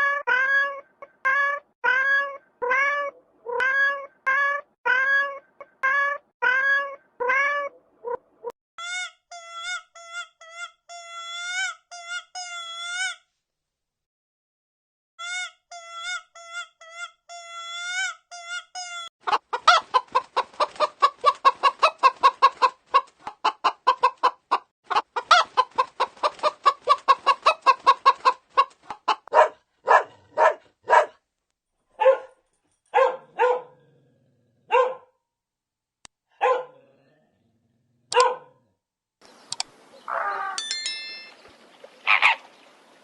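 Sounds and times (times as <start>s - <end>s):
chicken clucking: 19.2s - 29.4s.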